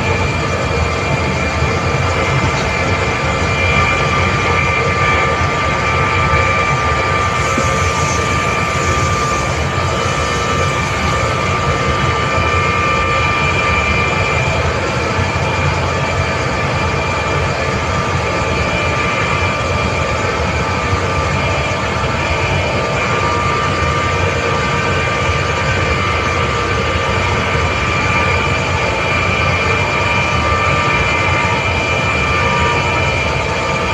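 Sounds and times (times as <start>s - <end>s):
air compressor running: 0.0s - 19.2s.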